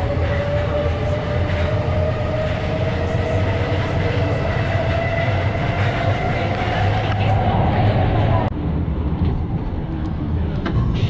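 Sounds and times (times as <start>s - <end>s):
train rumbling: 0.0s - 11.0s.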